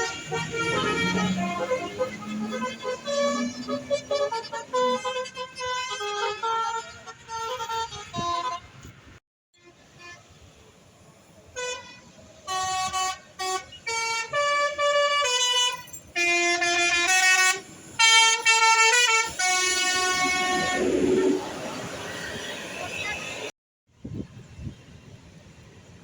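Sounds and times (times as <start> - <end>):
multi-tone musical air horn: 0.0 - 9.0, 11.6 - 21.8.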